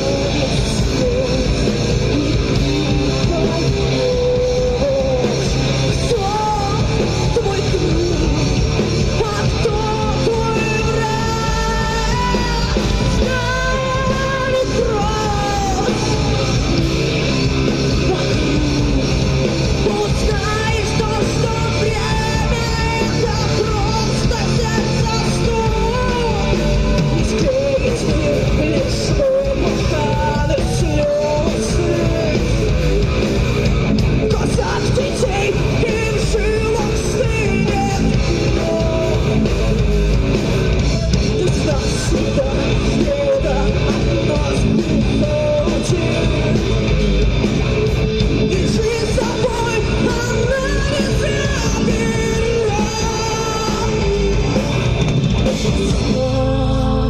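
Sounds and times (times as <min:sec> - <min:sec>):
person singing lead vocal: 0:00.0 - 0:57.0
rock band playing live: 0:00.0 - 0:57.0.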